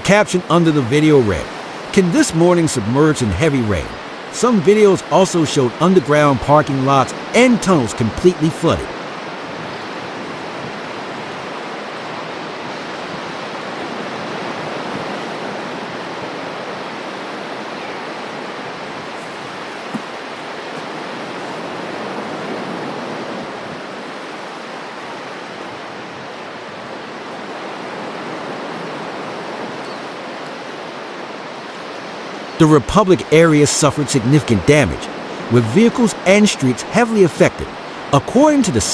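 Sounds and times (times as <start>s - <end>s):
brief knock: 19.2s - 20.2s.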